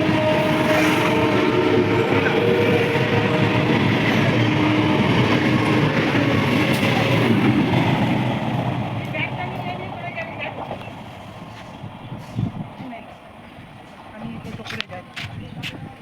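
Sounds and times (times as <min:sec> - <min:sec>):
train wheels on rails: 0:00.0 - 0:16.0.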